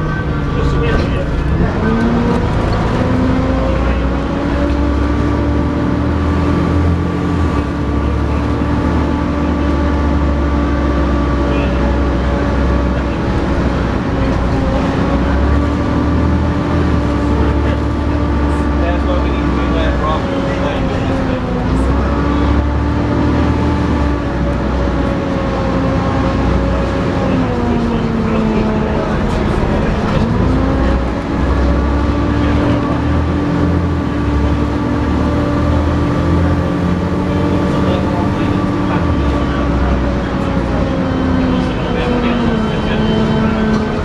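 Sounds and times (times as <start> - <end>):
bus engine rumbling with whine: 0.0 - 44.0.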